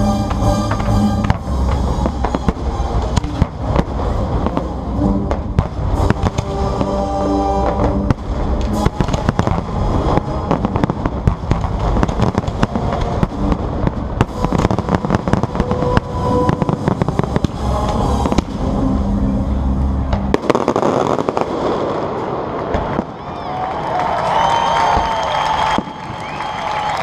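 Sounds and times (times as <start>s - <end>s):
music playing: 0.0s - 21.4s
crowd noise: 0.0s - 27.0s
fireworks bangs and crackling: 0.0s - 27.0s.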